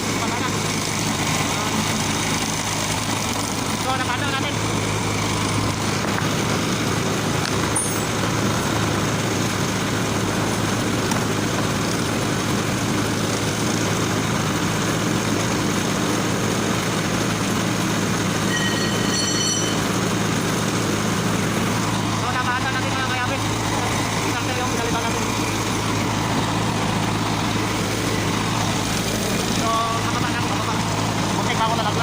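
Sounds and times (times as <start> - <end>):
engine idling: 0.0 - 32.0.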